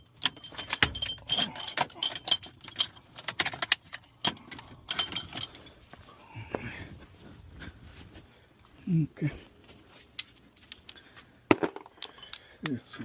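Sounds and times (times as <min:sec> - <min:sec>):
metal hand tools clinking: 0:00.0 - 0:05.9, 0:11.9 - 0:12.8.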